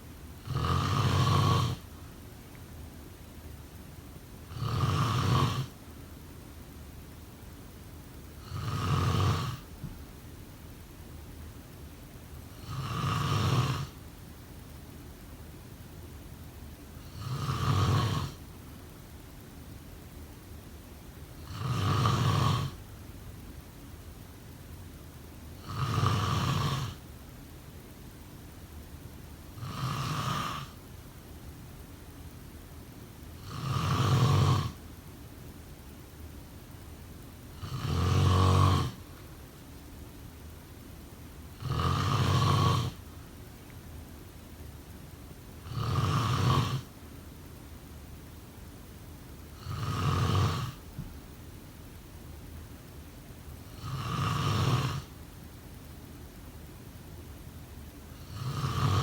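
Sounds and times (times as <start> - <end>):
faint steady hiss: 0.0 - 59.0
person snoring: 0.4 - 1.9, 4.5 - 5.7, 8.4 - 9.7, 12.6 - 14.0, 17.0 - 18.4, 21.4 - 22.8, 25.6 - 27.0, 29.6 - 30.8, 33.4 - 34.8, 37.6 - 39.0, 41.6 - 43.0, 45.6 - 46.9, 49.6 - 50.9, 53.7 - 55.1, 58.2 - 59.0.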